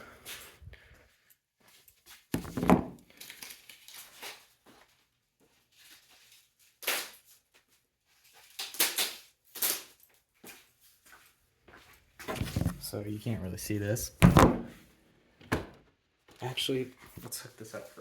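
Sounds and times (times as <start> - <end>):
rustling and scraping: 1.7 - 6.6, 9.6 - 13.0.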